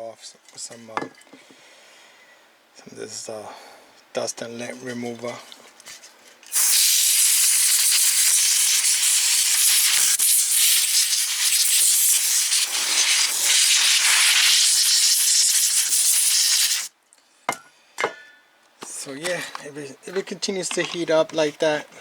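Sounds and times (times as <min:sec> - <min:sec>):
compressed-air duster hissing: 0:06.5 - 0:16.9.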